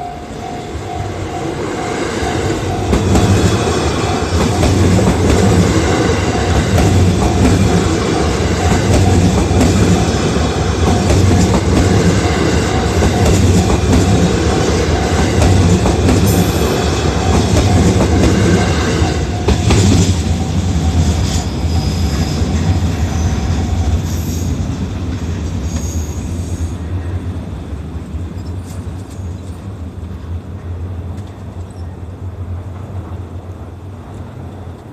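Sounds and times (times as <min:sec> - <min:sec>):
crossing warning bell ringing: 0:00.0 - 0:24.6
train wheels rumbling on rails: 0:00.0 - 0:34.9.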